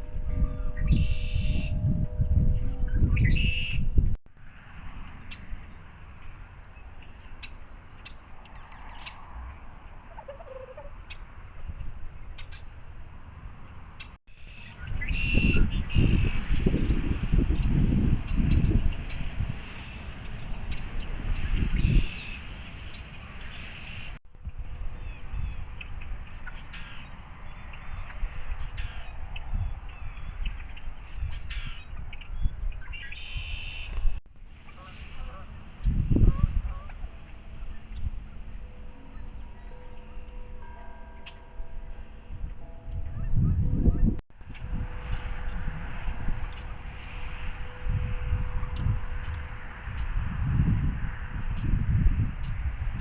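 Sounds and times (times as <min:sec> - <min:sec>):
songbirds chirping: 0:00.0 - 0:04.0, 0:05.0 - 0:16.7, 0:17.6 - 0:45.6
low rumble: 0:00.0 - 0:04.2
low outdoor rumble: 0:34.0 - 0:53.0.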